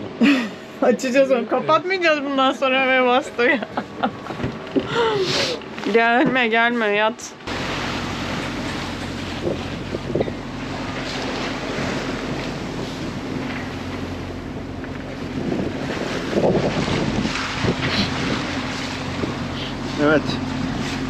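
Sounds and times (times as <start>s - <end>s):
low machine hum: 0.0s - 21.0s
water rushing past a hull: 0.0s - 21.0s
thuds and splashes: 7.5s - 14.0s, 14.9s - 21.0s
wind buffeting the microphone: 9.1s - 11.0s, 11.6s - 21.0s.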